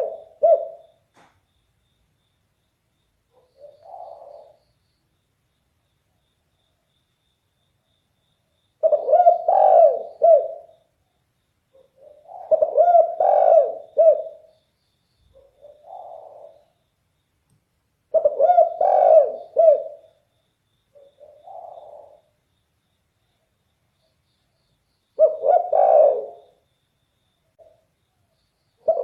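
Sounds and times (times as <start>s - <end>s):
dove cooing: 0.0s - 1.0s, 3.4s - 4.6s, 8.8s - 10.8s, 11.8s - 14.5s, 15.3s - 16.8s, 18.1s - 20.2s, 21.0s - 22.3s, 25.2s - 26.6s, 28.8s - 29.0s.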